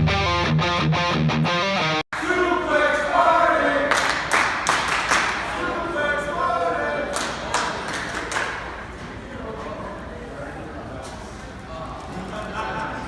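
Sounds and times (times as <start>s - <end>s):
crowd chanting: 2.1s - 4.3s
crowd clapping: 3.9s - 5.6s, 7.1s - 8.8s.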